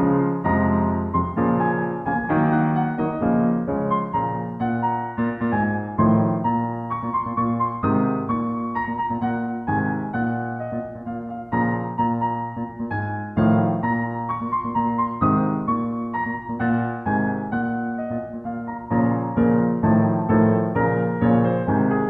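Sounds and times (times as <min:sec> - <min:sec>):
solo piano playing: 0:00.0 - 0:22.0.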